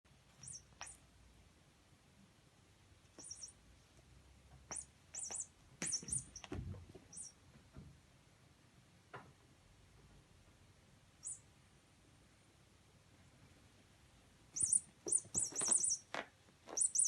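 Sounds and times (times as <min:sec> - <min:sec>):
squeaky toy squeaking: 0:00.4 - 0:01.0, 0:03.2 - 0:03.6, 0:04.7 - 0:06.5, 0:14.6 - 0:16.1, 0:16.7 - 0:17.0
soft thumps and scuffling: 0:05.8 - 0:08.0.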